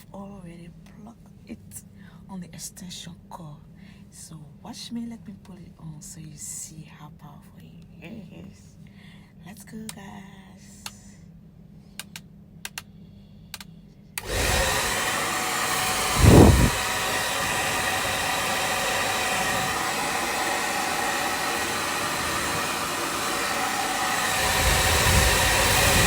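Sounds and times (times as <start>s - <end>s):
sharp clicks: 12.0s - 12.9s
hair dryer blowing: 14.2s - 26.0s.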